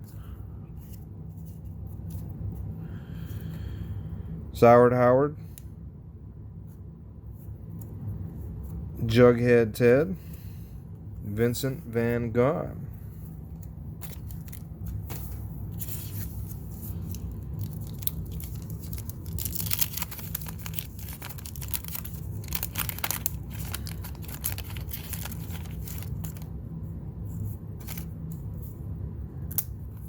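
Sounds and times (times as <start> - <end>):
steady low hum: 0.0 - 30.0
wax paper wrapper crackling: 13.5 - 26.5, 27.8 - 28.2.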